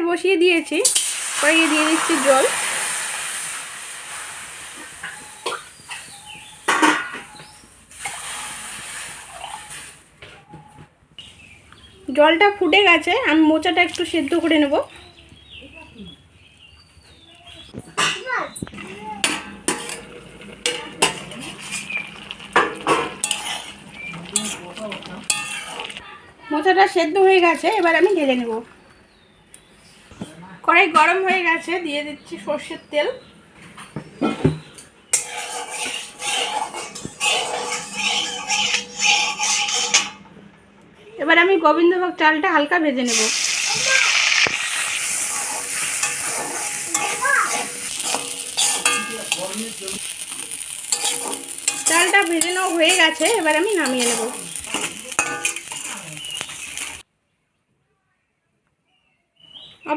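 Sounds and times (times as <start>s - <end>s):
water boiling: 0.5s - 10.1s, 18.7s - 26.0s, 35.2s - 40.2s, 43.1s - 57.0s
rice sizzling in oil: 0.6s - 10.2s, 19.2s - 26.0s, 35.1s - 40.2s, 43.1s - 57.0s
spoon scraping a pan: 4.8s - 9.9s, 18.0s - 26.0s, 34.4s - 40.3s, 43.1s - 57.0s.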